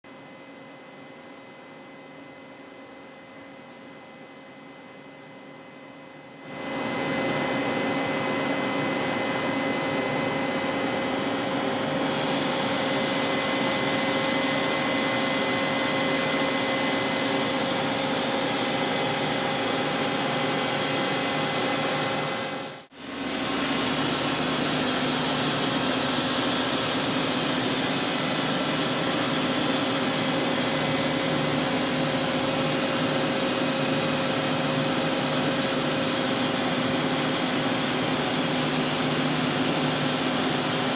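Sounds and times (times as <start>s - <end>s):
lathe machine humming and whirring: 6.5s - 40.9s.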